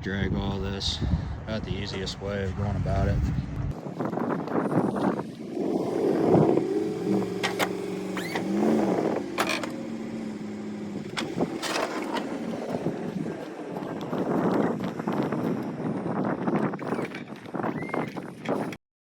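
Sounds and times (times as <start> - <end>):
snow-removal vehicle engine: 5.3 - 15.9.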